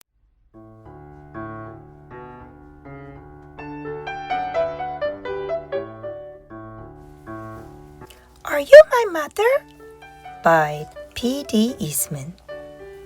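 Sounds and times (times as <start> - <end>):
gentle piano music: 0.8 - 13.0.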